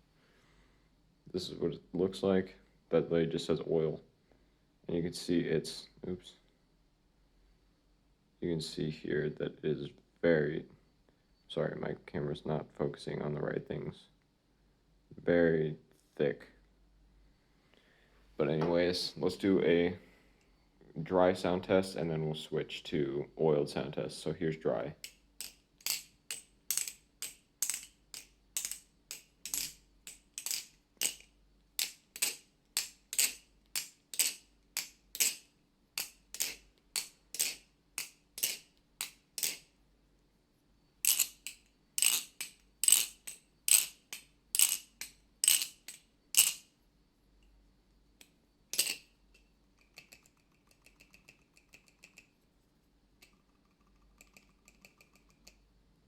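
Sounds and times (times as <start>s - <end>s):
butterfly knife handles clacking: 25.0s - 39.7s, 41.0s - 46.7s, 48.2s - 52.3s.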